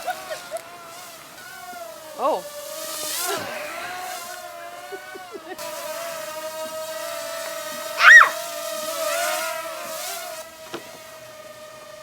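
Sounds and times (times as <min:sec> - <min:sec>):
drone propellers humming: 0:00.0 - 0:12.0
high squeal: 0:08.0 - 0:08.4.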